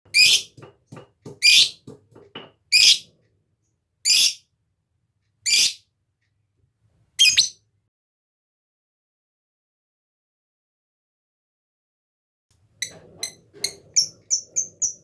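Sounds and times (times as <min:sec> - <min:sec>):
lovebird shrill calls: 0:00.2 - 0:00.5, 0:01.4 - 0:01.7, 0:02.8 - 0:03.0, 0:04.1 - 0:04.4, 0:05.5 - 0:05.8, 0:07.2 - 0:07.6.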